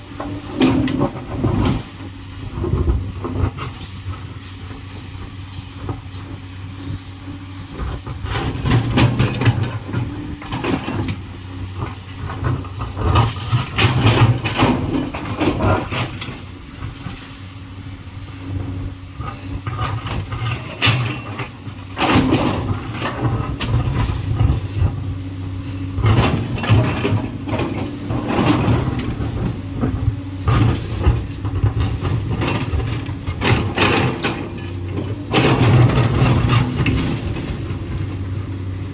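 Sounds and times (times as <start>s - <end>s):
excavator diesel engine running: 0.0s - 38.9s
metal clanks and knocks: 0.2s - 1.9s, 7.8s - 17.4s, 19.2s - 25.0s, 25.9s - 38.2s.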